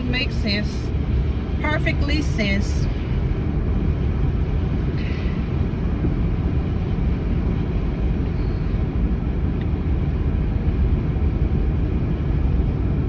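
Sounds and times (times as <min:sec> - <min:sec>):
road and engine noise in car: 0:00.0 - 0:13.0.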